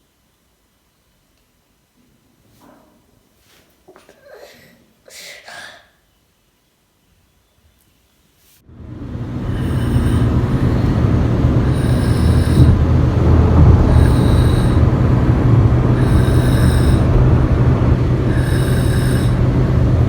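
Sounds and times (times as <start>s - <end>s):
steady low rumble: 8.7s - 20.0s
baby whistling snore: 9.6s - 10.9s, 11.7s - 12.8s, 13.8s - 14.9s, 16.0s - 17.2s, 18.3s - 19.4s.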